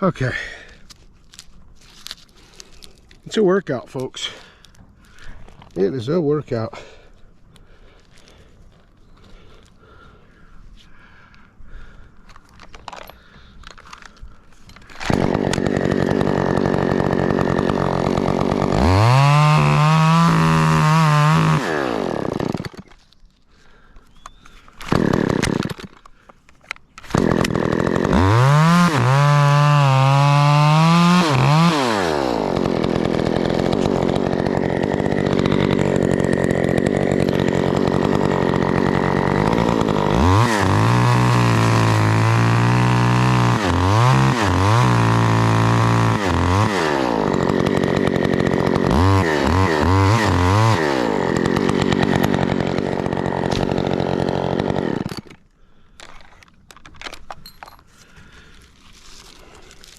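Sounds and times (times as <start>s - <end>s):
chainsaw revving and cutting wood: 13.0s - 23.0s, 23.6s - 26.4s, 27.0s - 56.4s, 58.0s - 59.9s.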